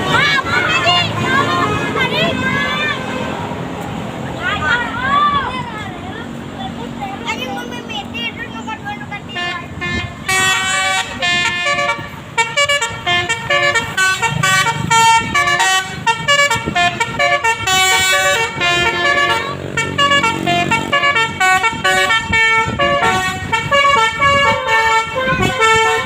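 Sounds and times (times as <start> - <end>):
musical air horn playing a tune: 9.4 - 26.0.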